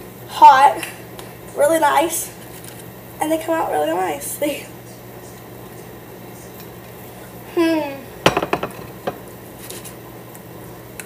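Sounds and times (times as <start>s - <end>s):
dishes clinking: 8.2s - 9.2s.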